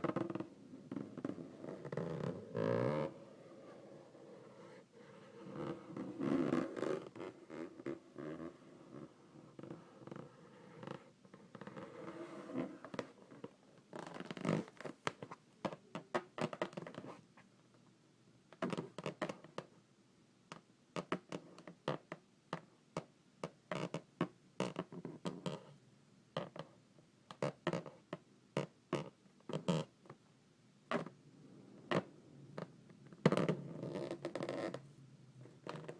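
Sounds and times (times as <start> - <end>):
fingernails scratching balloon: 0.0 - 13.4
rubber balloon squeaking: 0.0 - 15.0, 31.9 - 34.8, 35.4 - 35.9.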